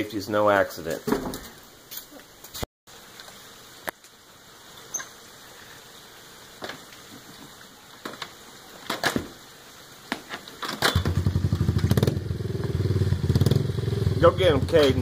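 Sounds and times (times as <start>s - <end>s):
small motorcycle engine running: 11.0s - 15.0s.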